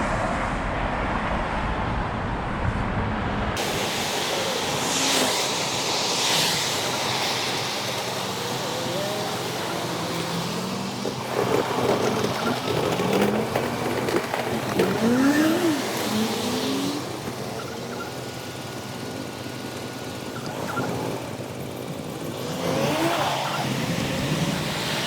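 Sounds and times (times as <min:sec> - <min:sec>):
wind noise: 0:00.0 - 0:17.7
traffic noise: 0:00.0 - 0:25.0.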